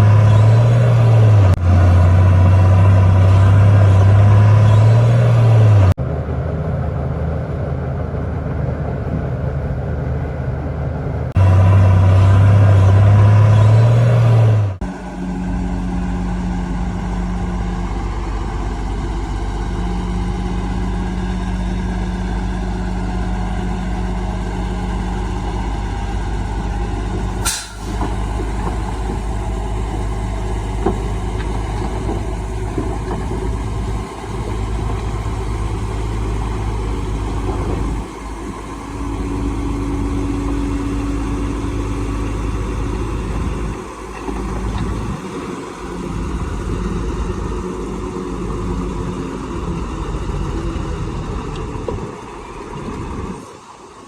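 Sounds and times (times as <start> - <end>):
heavy diesel machinery running: 0.0 - 54.0
short sharp noise: 27.4 - 28.4.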